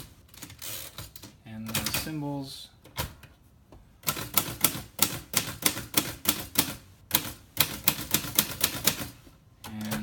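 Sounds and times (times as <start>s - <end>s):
manual typewriter typebar strikes: 4.0s - 10.0s.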